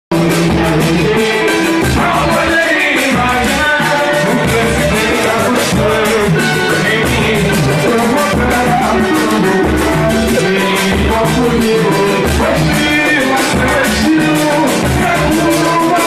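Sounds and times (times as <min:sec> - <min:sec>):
lead vocal singing: 0:00.1 - 0:16.0
pulsing bass line: 0:00.1 - 0:16.0
samba band playing: 0:00.1 - 0:16.0
steady percussion: 0:00.1 - 0:16.0.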